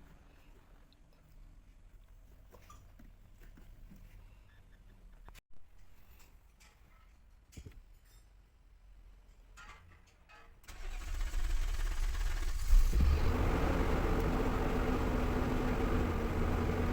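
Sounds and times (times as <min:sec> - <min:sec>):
car engine cranking and idling: 0:10.7 - 0:16.9.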